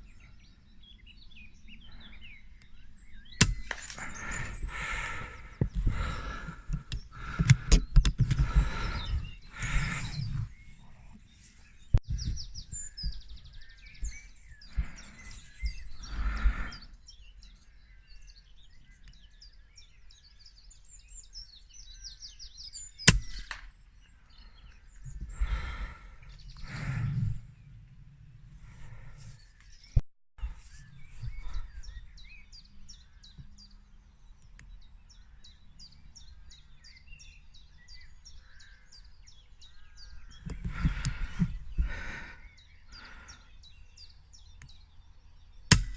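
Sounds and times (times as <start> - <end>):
small birds chirping: 0.0 - 45.9
sharp crack: 3.4 - 4.4
breathy rushes of noise: 25.3 - 27.7.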